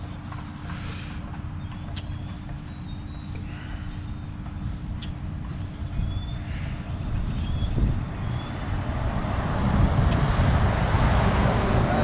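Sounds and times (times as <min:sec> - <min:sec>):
wind buffeting microphone: 0:04.0 - 0:12.0.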